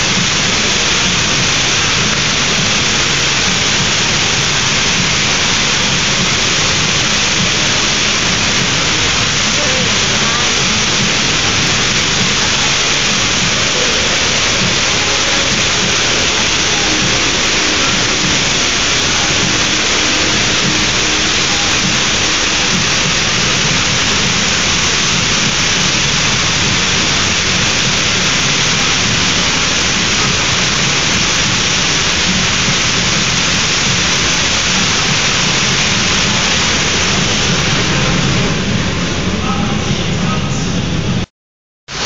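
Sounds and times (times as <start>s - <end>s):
water pouring into pool: 0.0s - 39.4s
fountain jets spraying: 0.0s - 41.3s.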